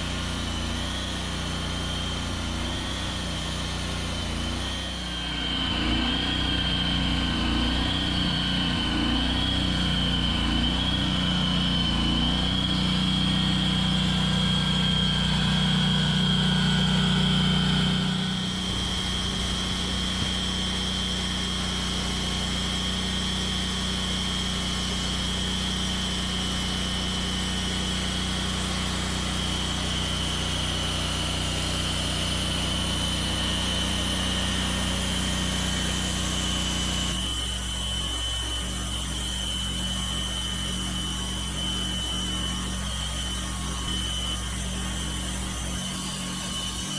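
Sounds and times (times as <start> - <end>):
sawmill gas engine running: 0.0 - 46.9
thin high whine: 4.5 - 21.8, 33.6 - 46.9.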